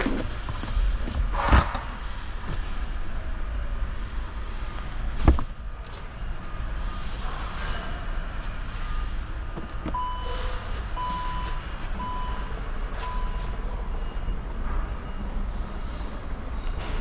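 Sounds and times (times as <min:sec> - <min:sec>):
vehicle reversing alarm beeping: 0:06.0 - 0:17.0.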